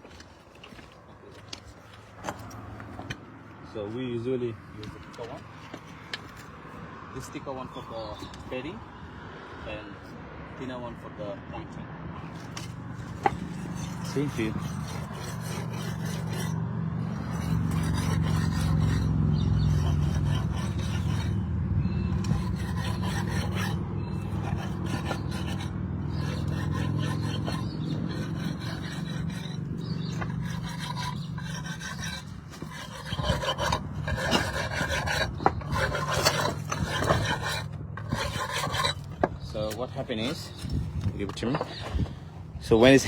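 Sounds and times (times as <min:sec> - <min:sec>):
tool scraping mortar: 0:04.8 - 0:06.6, 0:12.2 - 0:42.2.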